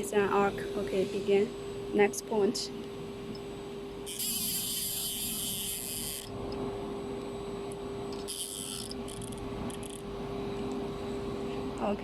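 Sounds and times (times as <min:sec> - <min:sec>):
machine hum: 0:00.0 - 0:12.0.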